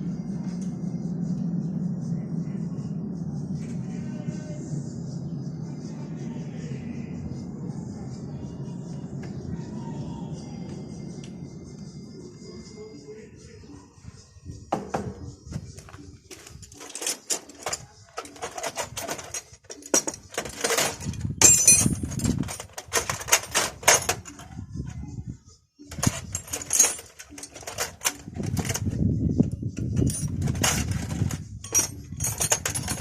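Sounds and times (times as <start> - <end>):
metal tools clinking and clattering: 15.0 - 25.0, 25.8 - 33.0
ringing metal clink: 16.4 - 24.6, 25.9 - 28.8, 29.8 - 33.0.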